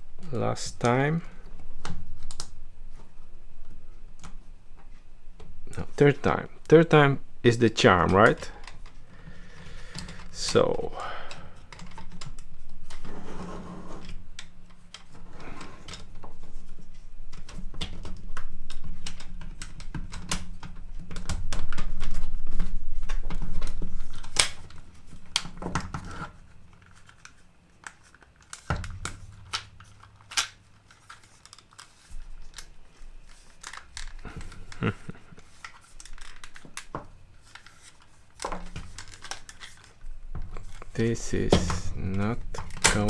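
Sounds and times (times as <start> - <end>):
plastic parts clicking and knocking: 7.9 - 13.1, 14.0 - 43.0.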